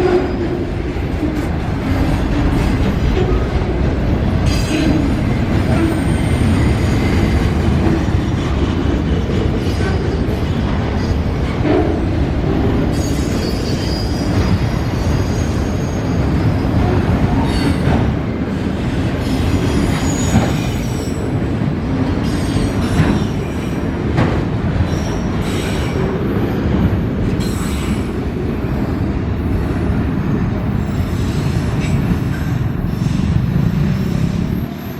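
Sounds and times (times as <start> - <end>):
train wheels rumbling on rail: 0.0 - 34.9
train wheels clacking: 19.0 - 26.2.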